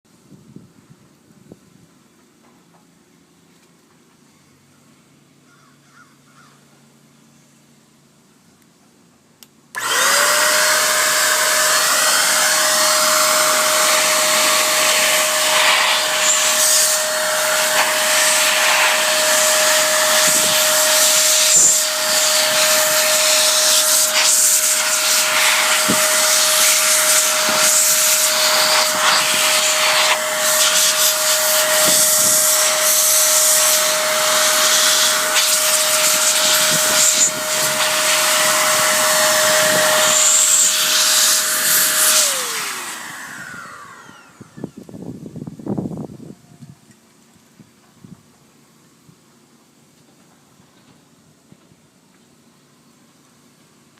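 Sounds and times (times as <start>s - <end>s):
electric blower motor whine: 9.7s - 46.3s
rushing air: 10.6s - 44.5s.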